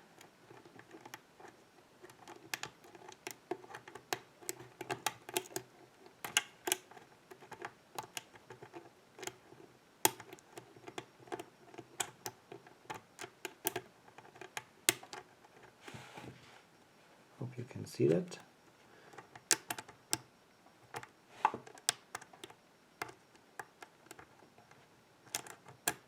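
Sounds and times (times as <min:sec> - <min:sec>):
lock pick clicking: 0:19.1 - 0:20.3.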